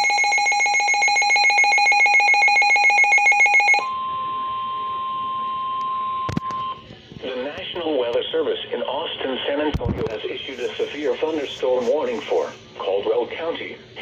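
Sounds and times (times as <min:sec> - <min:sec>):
two-tone alarm: 0:00.0 - 0:06.8
single steady alarm tone: 0:00.0 - 0:06.9.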